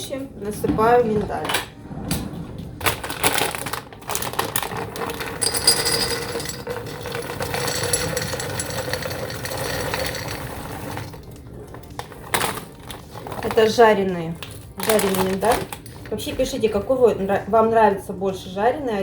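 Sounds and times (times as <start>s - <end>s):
nuts pouring into a container: 3.6s - 11.2s.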